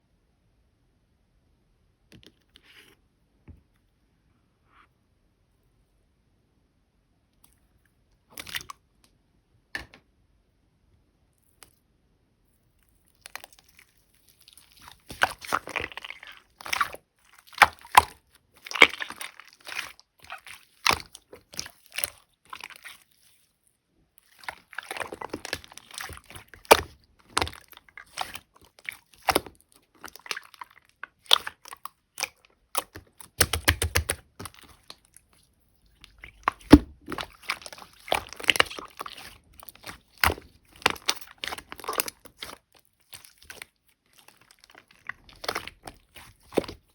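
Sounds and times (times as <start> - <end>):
slime popping and crackling: 24.2 - 35.4, 36.0 - 46.9.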